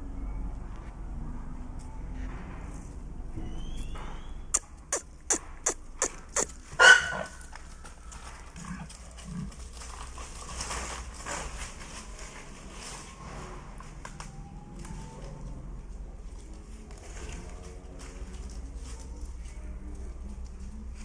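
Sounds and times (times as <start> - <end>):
dog barking: 6.8 - 7.4.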